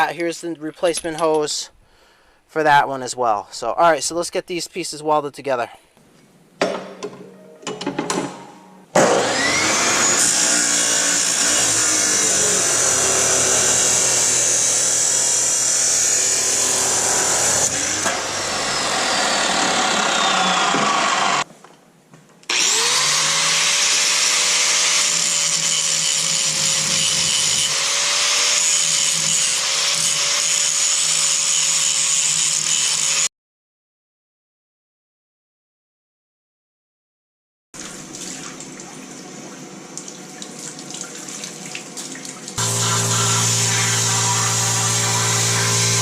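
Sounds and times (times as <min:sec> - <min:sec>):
angle grinder grinding steel: 0:09.0 - 0:21.5, 0:22.5 - 0:33.3, 0:42.6 - 0:46.0.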